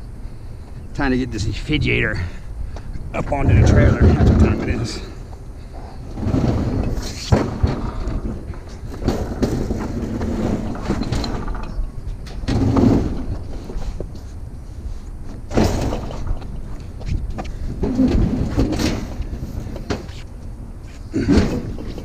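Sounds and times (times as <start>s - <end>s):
refrigerator bumping and scraping: 3.4s - 5.0s, 6.2s - 11.7s, 12.4s - 14.0s, 15.5s - 16.4s, 17.8s - 20.2s.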